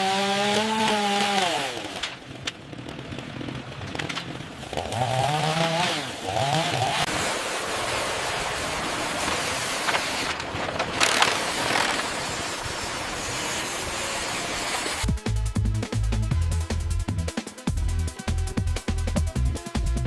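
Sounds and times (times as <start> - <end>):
harsh cutting noise: 0.0 - 20.0
small power tool motor: 11.0 - 15.0.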